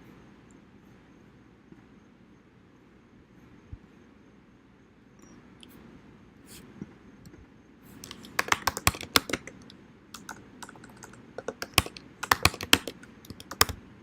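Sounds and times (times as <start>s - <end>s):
keyboard typing: 8.0s - 13.8s.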